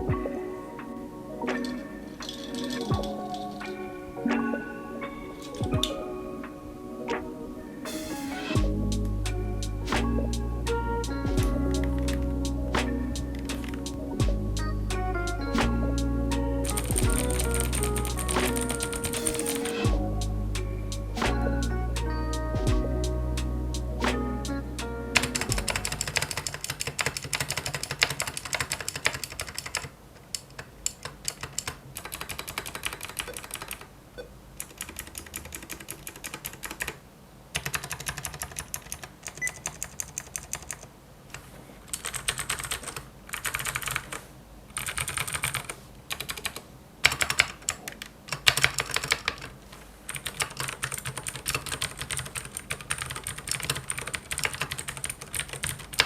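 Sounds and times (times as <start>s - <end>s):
clicky mechanical keyboard typing: 16.6s - 19.9s, 25.2s - 33.9s, 34.6s - 37.0s, 37.6s - 40.9s, 41.9s - 44.2s, 44.8s - 49.5s, 50.1s - 56.0s.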